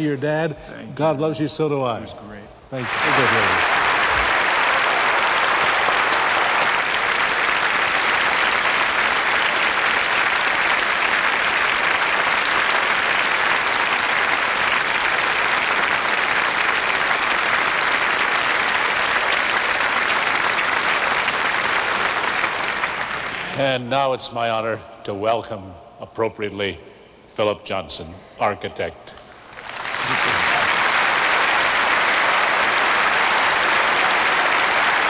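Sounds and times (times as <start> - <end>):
audience applauding: 2.8 - 23.6, 29.4 - 35.0.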